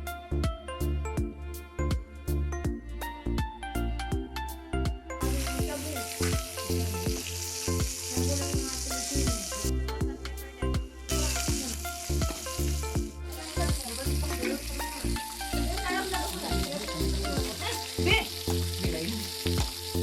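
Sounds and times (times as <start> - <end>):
background music with bass line: 0.0 - 20.0
meat sizzling on a grill pan: 5.2 - 9.8, 11.1 - 20.0.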